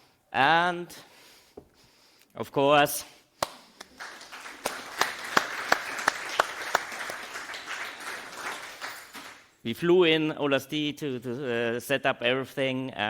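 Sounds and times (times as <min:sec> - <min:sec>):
person clapping close by: 0:03.4 - 0:09.5
audience applauding: 0:03.8 - 0:09.6.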